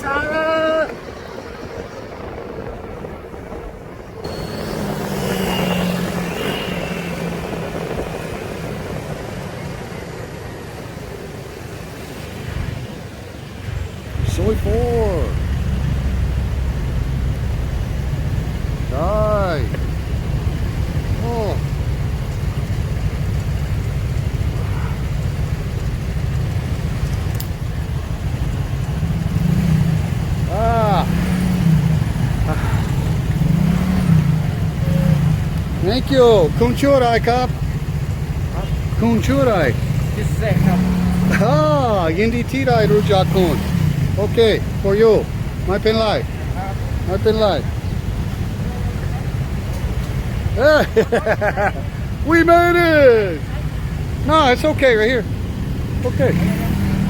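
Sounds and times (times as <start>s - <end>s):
wind noise: 0.0s - 36.7s
motorcycle engine: 0.0s - 57.0s.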